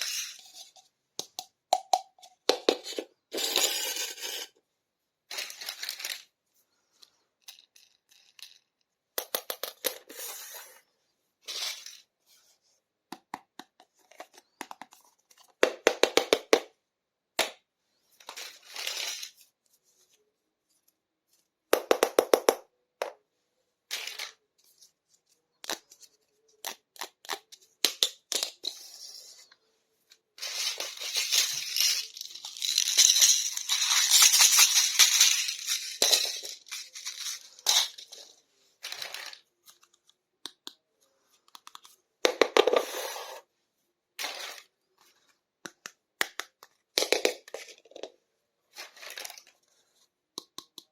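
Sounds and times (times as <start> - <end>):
plastic toy pieces clicking: 30.5 - 38.1.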